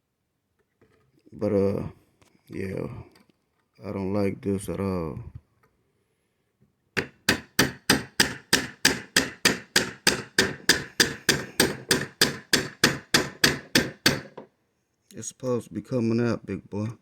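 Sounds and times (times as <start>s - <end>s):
hammer tapping a punch: 7.0s - 14.5s.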